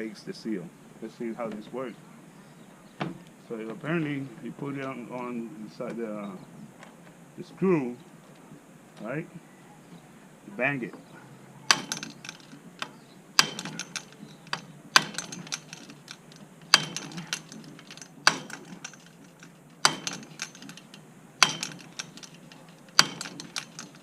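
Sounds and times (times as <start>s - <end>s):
short metallic rattle: 11.6s - 24.0s
hammer striking metal: 11.7s - 12.4s, 13.4s - 19.1s, 19.8s - 20.8s, 21.4s - 24.0s.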